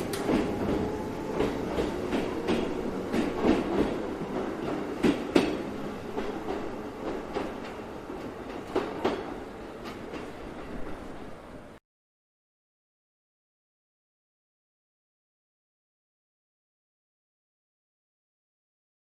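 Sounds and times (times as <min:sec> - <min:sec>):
train wheels clicking over rail joints: 0:00.0 - 0:11.0
train running hum: 0:00.0 - 0:11.8.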